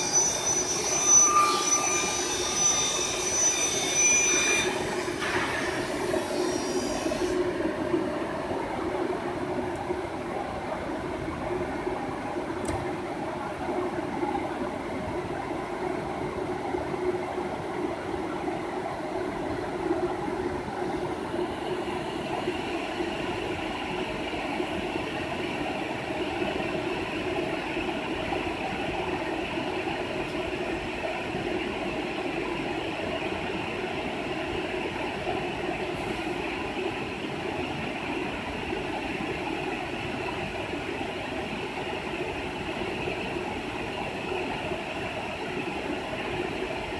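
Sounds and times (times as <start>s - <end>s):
high-pitched whine: 0.0s - 7.5s.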